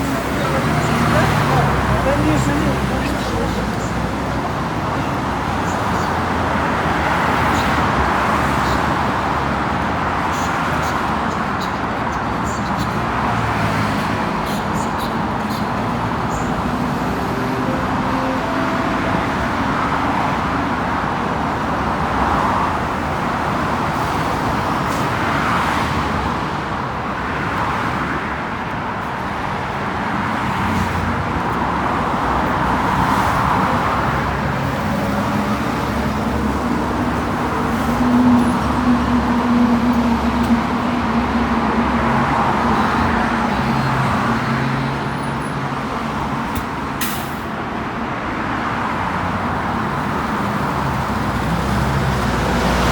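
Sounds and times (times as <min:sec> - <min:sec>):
road traffic rumble: 0:00.0 - 0:52.9.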